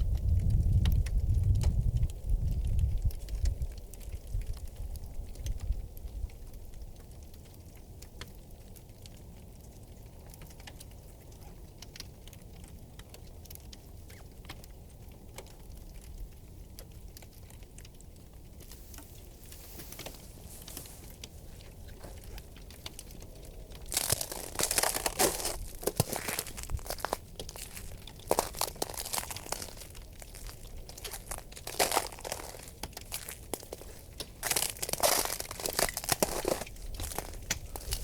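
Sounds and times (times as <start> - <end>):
river ice cracking: 17.2 - 38.0
ice crunching: 18.7 - 38.0.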